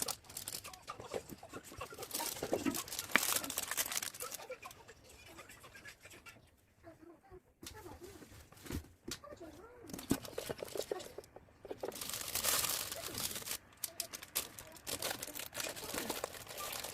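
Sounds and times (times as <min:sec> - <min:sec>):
packaging rustling and crinkling: 0:00.0 - 0:04.4, 0:09.9 - 0:16.9.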